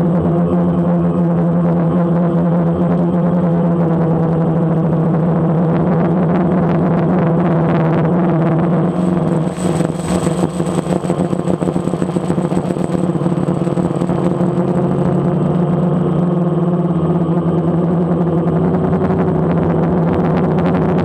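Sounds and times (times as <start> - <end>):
drone propellers humming: 8.8 - 16.2.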